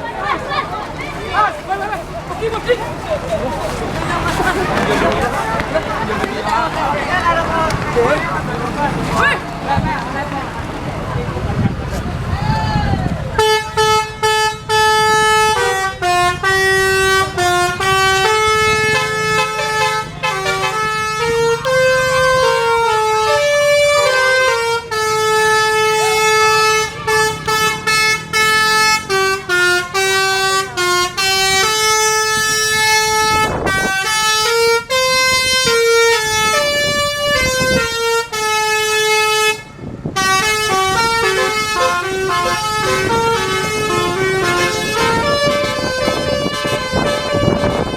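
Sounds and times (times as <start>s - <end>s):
musical bus air horn tune: 13.4s - 47.9s.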